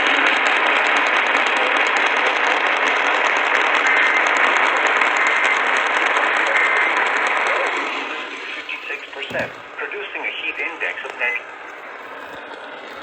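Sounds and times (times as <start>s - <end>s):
radio static hiss: 5.7s - 13.0s.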